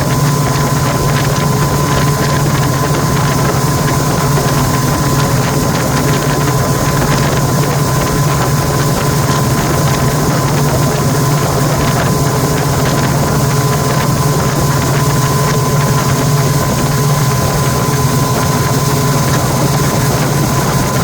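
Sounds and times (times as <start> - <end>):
motorboat engine humming: 0.0 - 21.0.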